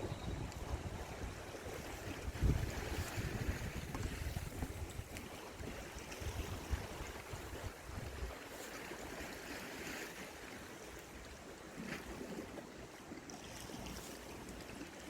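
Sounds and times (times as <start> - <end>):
wind buffeting microphone: 0.0 - 8.4
sea waves: 0.0 - 15.0.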